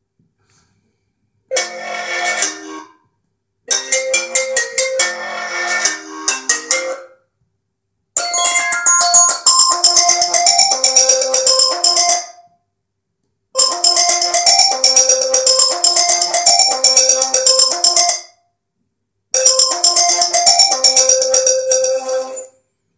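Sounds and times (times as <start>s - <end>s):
chiming marimba-like ringtone: 3.7s - 7.1s, 8.2s - 12.5s, 13.6s - 18.4s, 19.4s - 22.5s.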